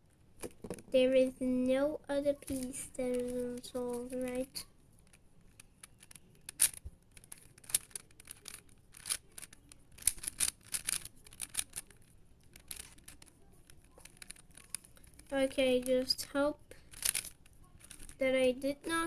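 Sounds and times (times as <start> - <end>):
puzzle cube clicking and scraping: 2.3 - 19.0.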